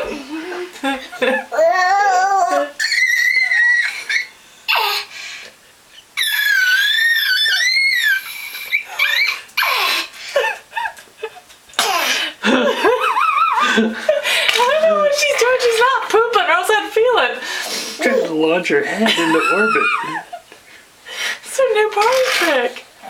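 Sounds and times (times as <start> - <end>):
baby squealing: 1.5 - 5.1, 6.2 - 10.1, 19.2 - 20.2
choppy laughter: 18.9 - 20.4.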